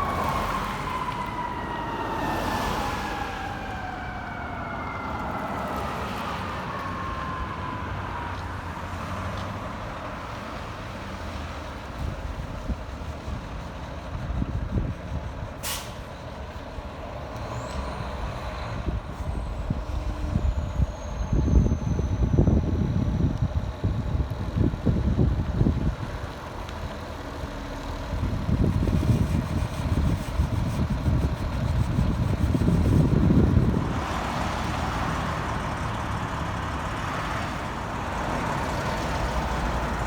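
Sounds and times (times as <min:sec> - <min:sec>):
fire truck siren winding down: 0:00.0 - 0:10.3, 0:14.8 - 0:26.2
heavy truck rumble: 0:00.0 - 0:40.0
traffic: 0:00.0 - 0:40.0
air brake hiss: 0:15.6 - 0:16.1.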